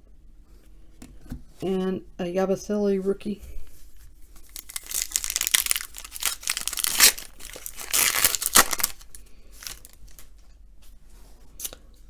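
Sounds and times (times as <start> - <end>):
wrapper tearing and crinkling: 4.4 - 10.3.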